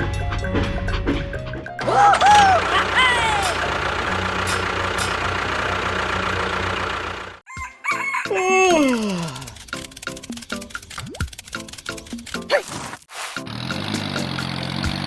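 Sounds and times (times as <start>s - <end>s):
engine-like hum: 0.0s - 7.5s, 8.7s - 12.5s, 13.4s - 15.0s
rooster crowing: 7.5s - 8.8s.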